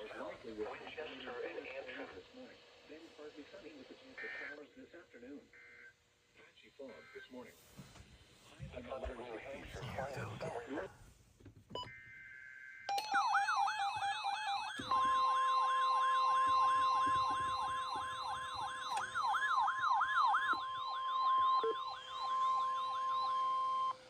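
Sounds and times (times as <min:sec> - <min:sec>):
steady warning alarm tone: 0:11.8 - 0:24.0
sweeping siren-like tone: 0:13.1 - 0:24.0.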